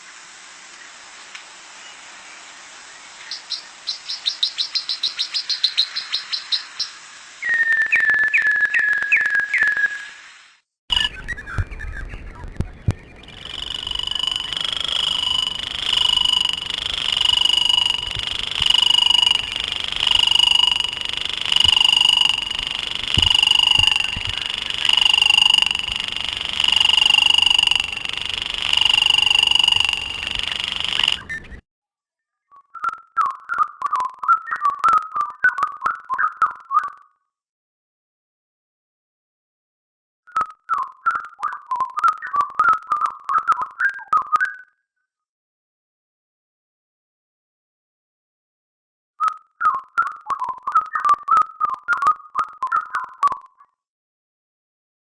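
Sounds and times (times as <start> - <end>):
high bird chirps: 3.3 - 10.2, 10.9 - 31.6
repeated bird call: 10.9 - 31.6.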